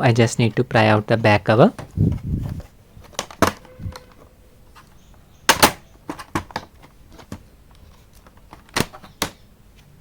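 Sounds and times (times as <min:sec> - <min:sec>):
plastic clips snapping: 0:03.0 - 0:04.2, 0:08.1 - 0:09.4.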